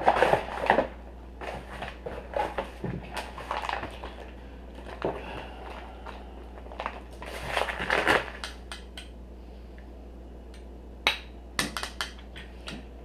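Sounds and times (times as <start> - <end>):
packaging crinkling and rustling: 0.0 - 8.4.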